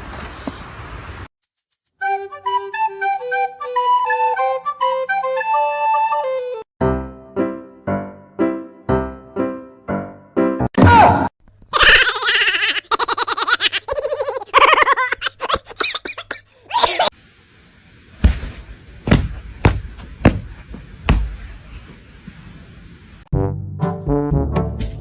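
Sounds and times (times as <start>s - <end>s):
dull knocks: 18.2s - 21.7s.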